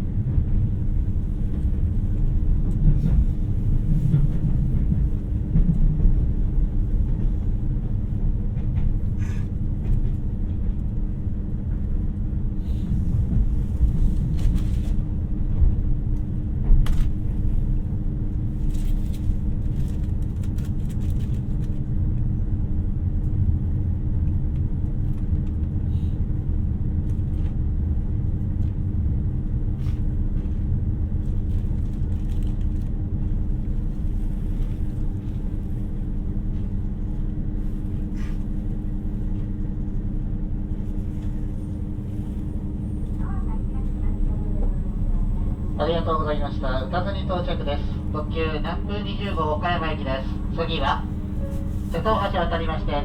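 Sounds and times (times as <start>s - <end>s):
train wheels rumbling: 0.0s - 20.4s
diesel engine hum: 33.5s - 53.0s.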